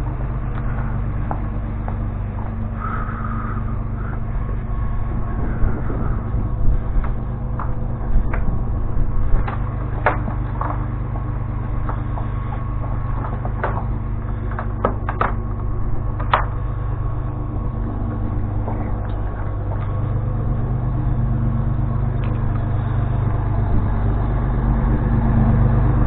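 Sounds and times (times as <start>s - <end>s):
low motor hum: 0.0s - 26.0s
sharp clicks and knocks: 9.3s - 15.6s, 16.2s - 16.8s.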